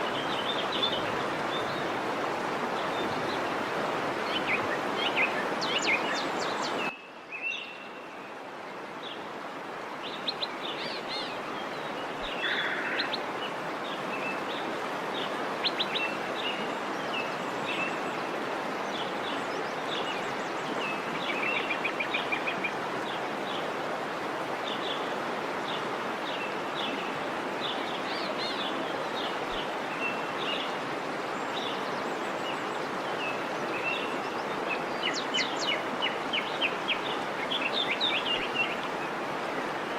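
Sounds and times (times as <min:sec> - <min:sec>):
waterfall rushing: 0:00.0 - 0:06.9.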